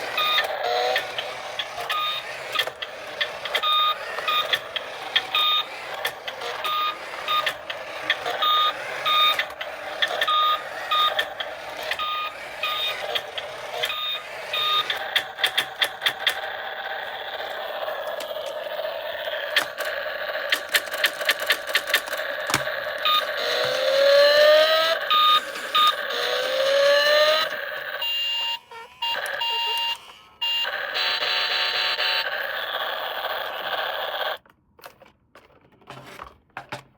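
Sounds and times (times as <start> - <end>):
toy electronic beeping: 0.0 - 34.4
fast run of clicks: 0.1 - 26.6.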